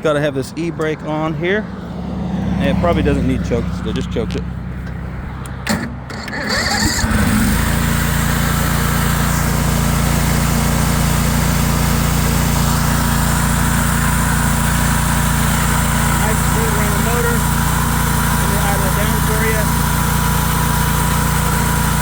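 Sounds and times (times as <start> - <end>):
engine cranking and starting: 5.5 - 22.0.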